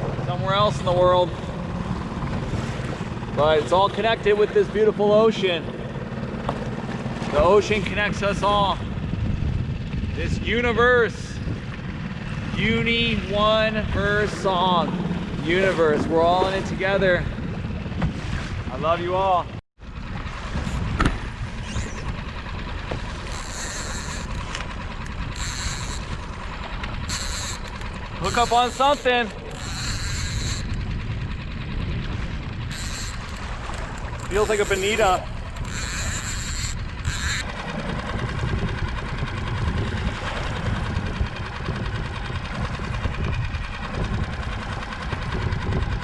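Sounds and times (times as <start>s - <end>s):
outboard motor running: 0.0s - 46.0s
water noise: 0.0s - 46.0s
wind: 0.0s - 46.0s
high-pitched buzzing: 21.6s - 30.8s, 32.7s - 37.5s.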